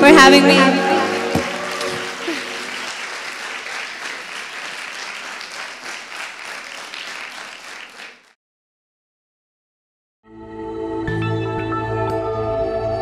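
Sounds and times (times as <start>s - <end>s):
audience applauding: 0.7s - 8.4s.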